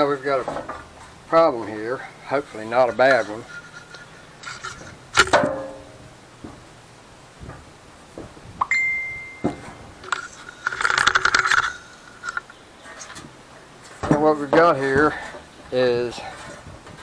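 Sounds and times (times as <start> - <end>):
metallic ding ringing: 8.6 - 9.8.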